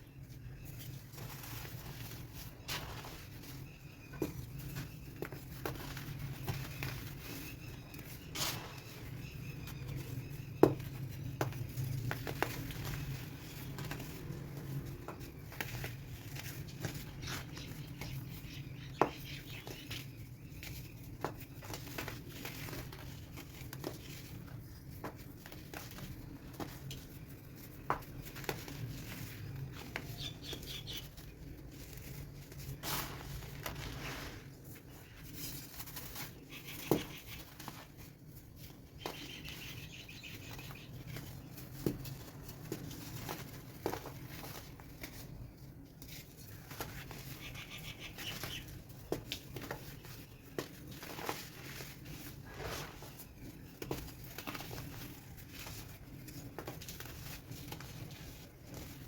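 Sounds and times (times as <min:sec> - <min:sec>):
baking soda crunching: 0:31.8 - 0:35.2, 0:50.8 - 0:53.4.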